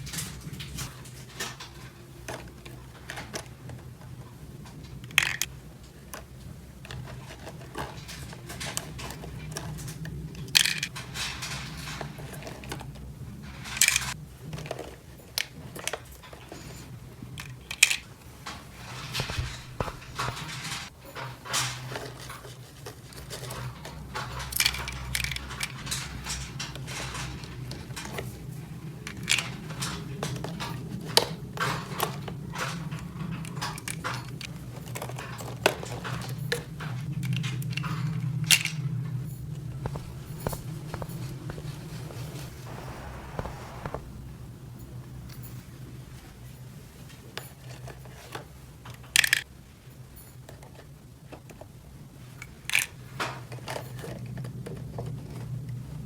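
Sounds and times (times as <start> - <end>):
low hum: 39.5 - 45.4.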